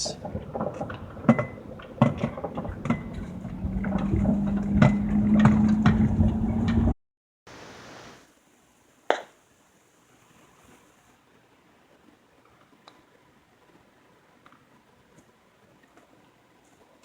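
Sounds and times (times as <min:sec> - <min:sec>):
van knocking and rattling: 0:00.0 - 0:06.9
engine hum: 0:00.0 - 0:07.0.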